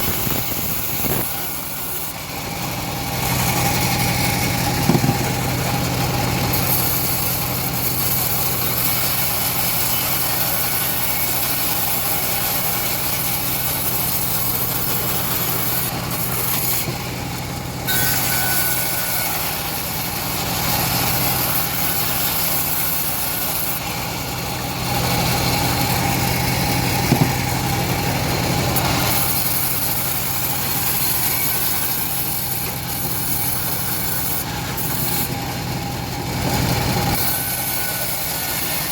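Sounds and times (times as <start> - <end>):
saw blade hissing: 0.0 - 2.2, 3.2 - 35.7, 36.5 - 38.9
engine running steadily: 0.0 - 38.9.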